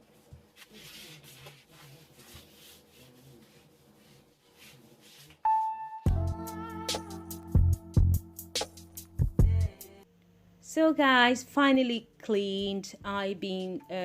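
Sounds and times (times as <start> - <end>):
rubbing strokes of wiping: 0.2 - 5.4
music with heavy beat: 6.1 - 9.8.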